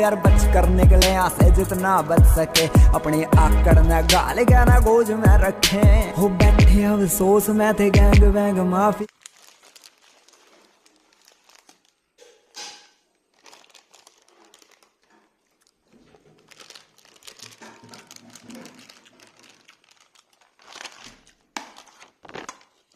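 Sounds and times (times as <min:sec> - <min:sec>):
food packaging rustling: 0:09.1 - 0:22.9.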